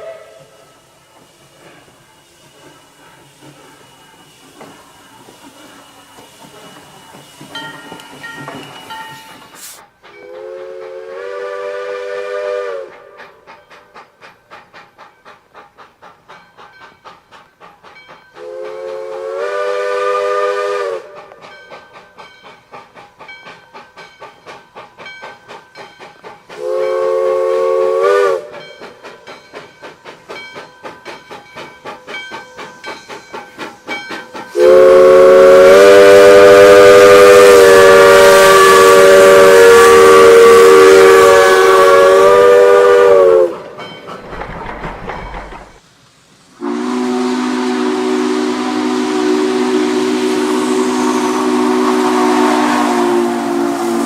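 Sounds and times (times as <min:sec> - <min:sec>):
steam whistle blasts: 0:00.0 - 0:01.8, 0:07.8 - 0:13.5, 0:18.4 - 0:21.6, 0:26.6 - 0:29.0, 0:34.4 - 0:43.7, 0:46.6 - 0:54.0
steam locomotive exhaust chuffs: 0:00.0 - 0:54.0.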